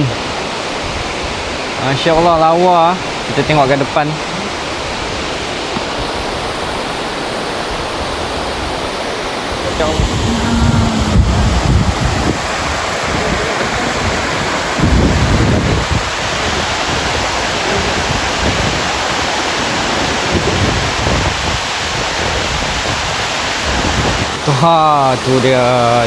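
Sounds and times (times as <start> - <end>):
waterfall roaring: 0.0 - 26.0
wind buffeting microphone: 7.6 - 24.5.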